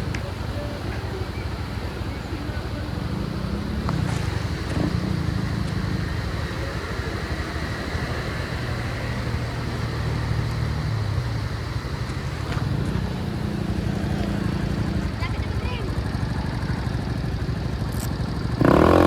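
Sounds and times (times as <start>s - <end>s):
motorcycle engine rumbling: 0.0s - 19.0s.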